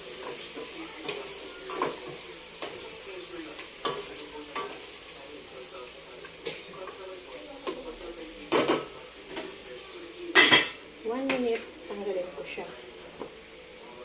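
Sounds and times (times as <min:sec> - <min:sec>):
food sizzling in oil: 0:00.0 - 0:14.0.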